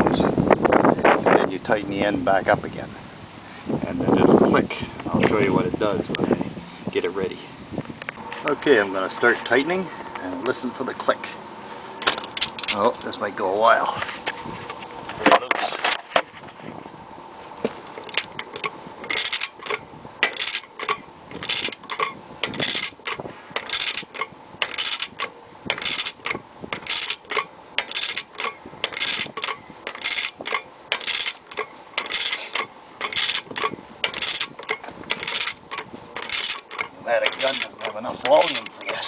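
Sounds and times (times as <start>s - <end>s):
torque wrench ratchet clicking: 12.0s - 12.8s, 18.0s - 39.0s.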